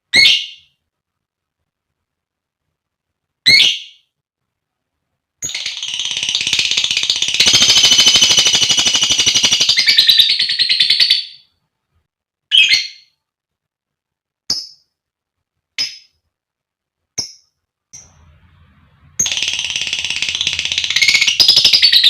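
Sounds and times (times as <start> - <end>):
lovebird chattering trill: 5.4 - 11.4, 19.2 - 22.0
lovebird sharp chirps: 19.2 - 22.0.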